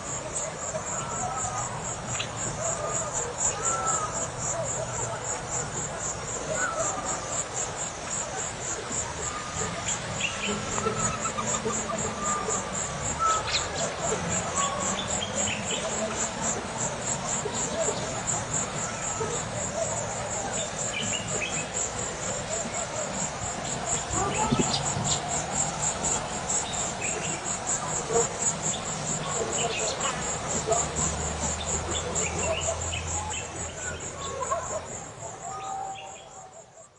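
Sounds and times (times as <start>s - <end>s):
high insect trill: 0.0s - 36.9s
faint bird whistles: 13.2s - 13.8s.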